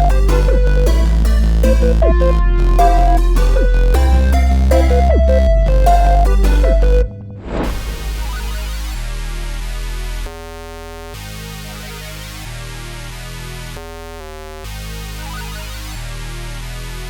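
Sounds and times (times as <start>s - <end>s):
synthesizer chords: 0.0s - 12.8s
deep bass: 0.0s - 17.0s.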